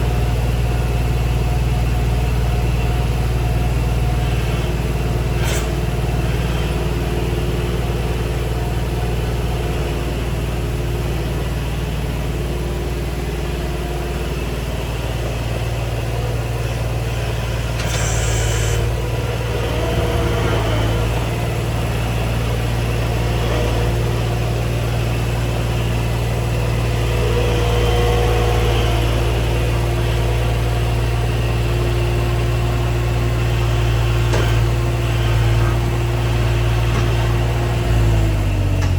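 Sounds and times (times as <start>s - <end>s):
diesel engine running under load: 0.0s - 38.9s
faint hydraulic whine: 13.5s - 24.2s.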